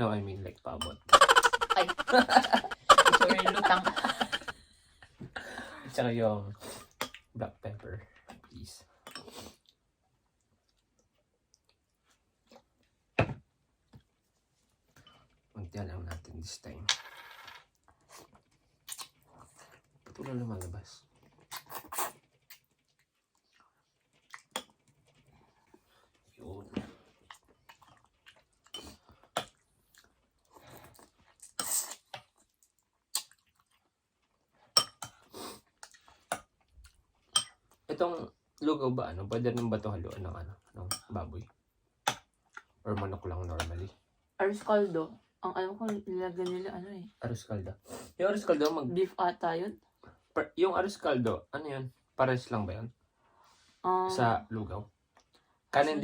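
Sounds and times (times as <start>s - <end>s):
chewing and mouth clicks: 17.8s - 20.4s, 21.0s - 26.4s, 27.0s - 37.8s, 42.0s - 42.8s.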